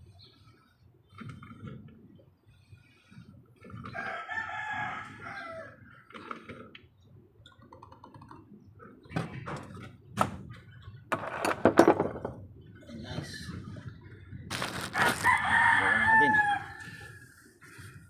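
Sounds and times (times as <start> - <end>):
rooster crowing: 4.0 - 5.8, 14.9 - 17.3.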